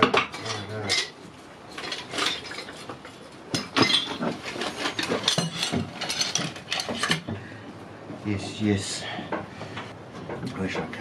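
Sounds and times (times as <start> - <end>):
metal hand tools clattering: 0.0 - 7.3.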